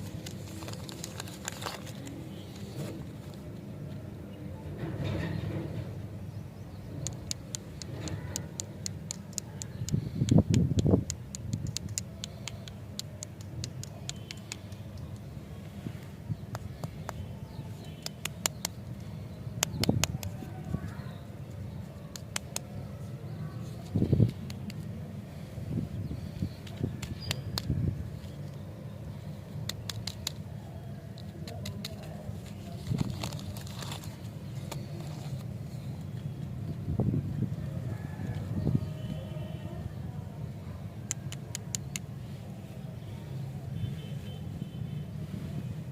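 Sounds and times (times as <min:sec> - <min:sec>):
candies and packaging clicking: 0:00.0 - 0:02.4, 0:07.0 - 0:15.3, 0:17.8 - 0:21.0, 0:22.0 - 0:22.8, 0:23.8 - 0:25.0, 0:26.5 - 0:27.8, 0:29.5 - 0:35.5, 0:41.0 - 0:42.1
plastic wrappers crinkling: 0:00.0 - 0:02.7, 0:31.2 - 0:35.4.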